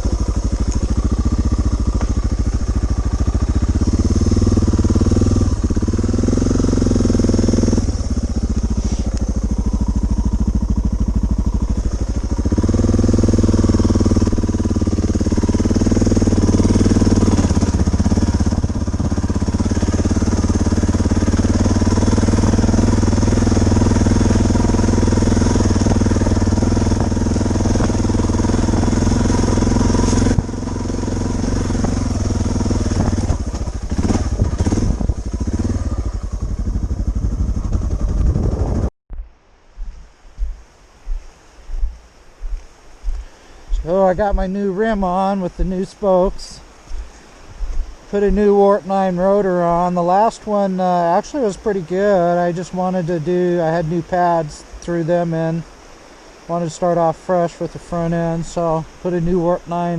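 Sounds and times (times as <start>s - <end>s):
motorcycle engine accelerating: 0.0s - 39.3s, 43.7s - 59.9s.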